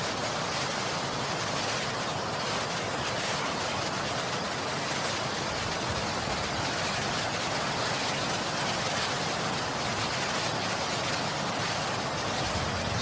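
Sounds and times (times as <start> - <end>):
steady hiss: 0.0 - 13.0.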